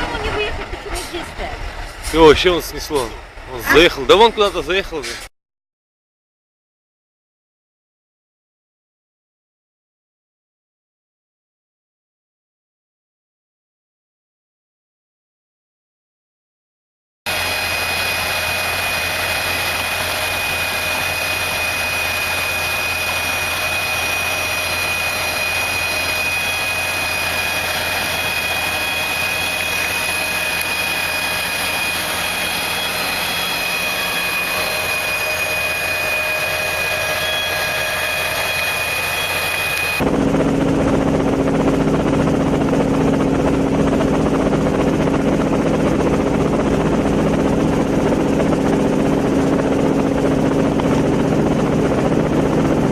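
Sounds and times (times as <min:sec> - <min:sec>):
engine whine: 0:00.0 - 0:05.2, 0:17.3 - 0:52.9
low engine drone: 0:00.0 - 0:05.3, 0:17.3 - 0:52.9.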